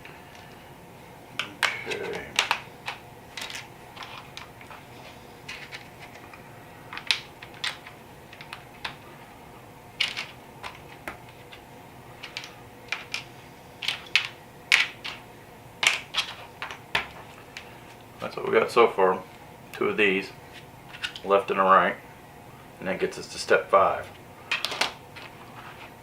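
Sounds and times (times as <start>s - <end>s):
plastic bricks clicking and clattering: 1.6s - 4.8s, 10.0s - 11.1s, 24.5s - 25.3s.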